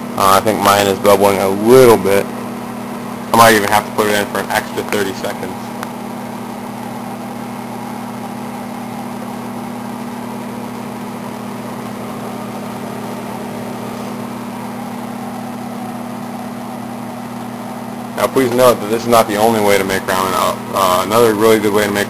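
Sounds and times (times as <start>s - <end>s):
microwave oven humming: 0.0s - 22.0s.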